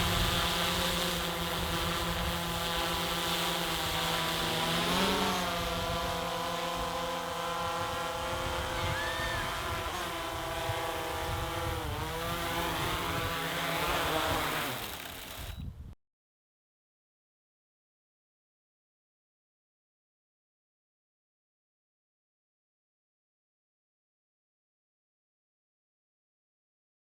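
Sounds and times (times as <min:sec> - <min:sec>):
drone propellers humming: 0:00.0 - 0:15.5.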